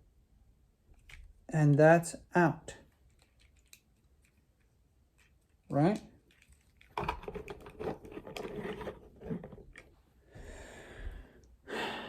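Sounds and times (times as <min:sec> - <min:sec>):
plastic toy joints clicking: 0:03.1 - 0:04.4
plastic rubbing: 0:06.3 - 0:09.9.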